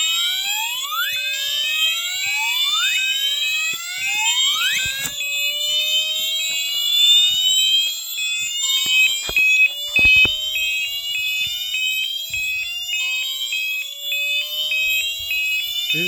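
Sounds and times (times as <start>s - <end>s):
rising swept alarm tones: 0.0s - 16.0s
rapid high beeping: 8.9s - 11.9s, 14.2s - 16.0s.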